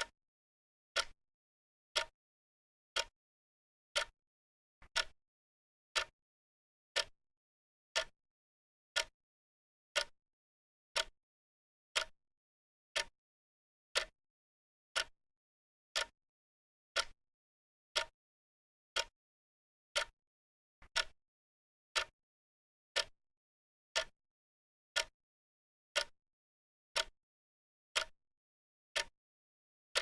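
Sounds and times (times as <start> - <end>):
clock ticking: 4.9 - 5.2, 17.0 - 17.2, 21.0 - 21.2.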